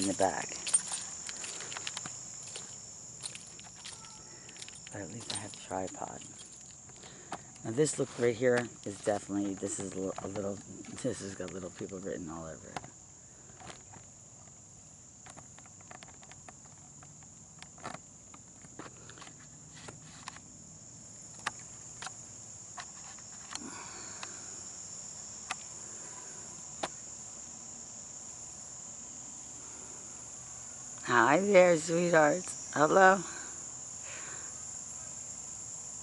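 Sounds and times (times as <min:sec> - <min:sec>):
high-pitched insect chorus: 0:00.0 - 0:36.0
sharp clicks and light knocks: 0:00.1 - 0:12.1, 0:15.2 - 0:20.4, 0:21.3 - 0:23.6.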